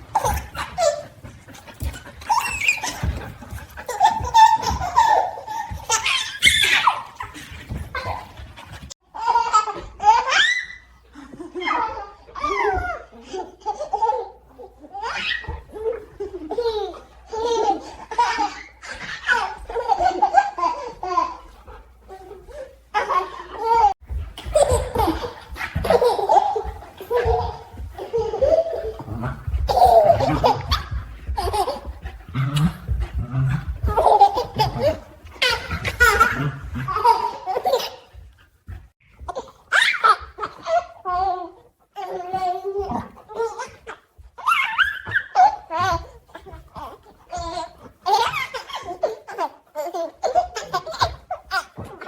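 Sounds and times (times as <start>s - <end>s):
baby laughing: 11.6s - 38.2s.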